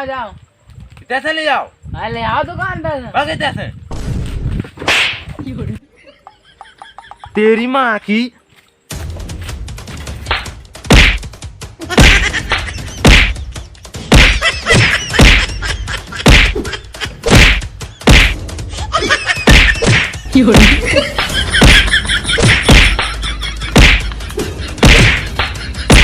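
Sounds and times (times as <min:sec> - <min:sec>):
loud whacks and thuds: 0:03.9 - 0:05.4, 0:10.2 - 0:11.4, 0:12.0 - 0:13.4, 0:14.0 - 0:15.5, 0:16.2 - 0:18.5, 0:19.4 - 0:23.1, 0:23.7 - 0:24.1, 0:24.8 - 0:26.0.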